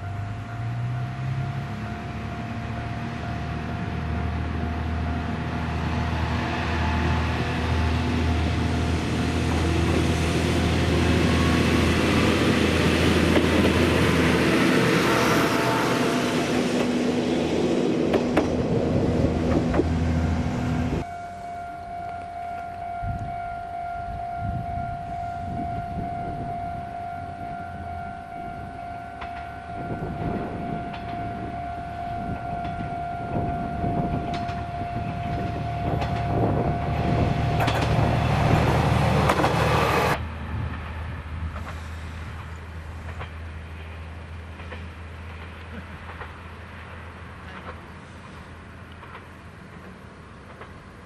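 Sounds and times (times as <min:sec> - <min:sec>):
diesel engine humming: 0:00.0 - 0:51.0
train wheels clicking on rail joints: 0:04.6 - 0:15.6, 0:16.4 - 0:20.0, 0:27.8 - 0:51.0
steady high tone: 0:07.4 - 0:40.4.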